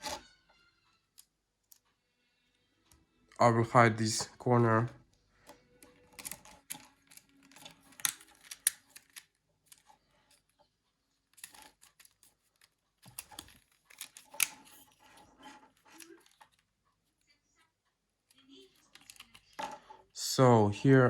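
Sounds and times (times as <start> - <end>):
plastic parts rustling: 5.5 - 16.7, 18.7 - 20.0.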